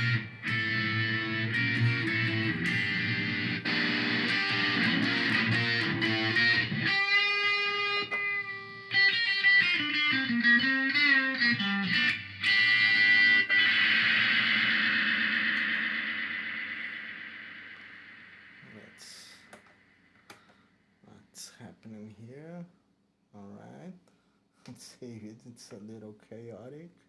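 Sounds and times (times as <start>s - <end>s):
electric guitar with delay: 0.0s - 19.6s.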